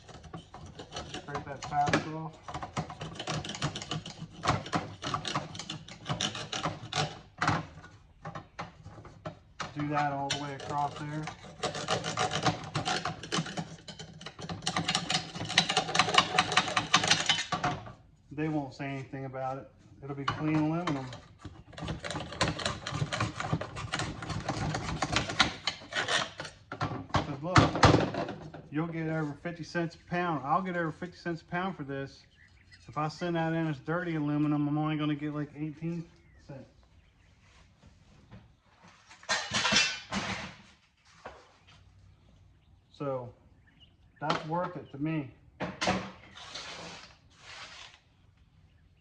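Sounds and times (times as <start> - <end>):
fabric scraping off metal panel: 46.2 - 48.0.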